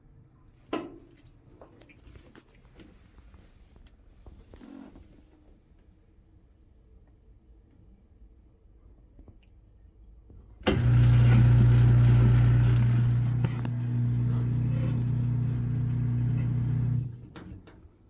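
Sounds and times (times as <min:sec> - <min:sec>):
washing machine drain pump humming: 0:10.6 - 0:17.8.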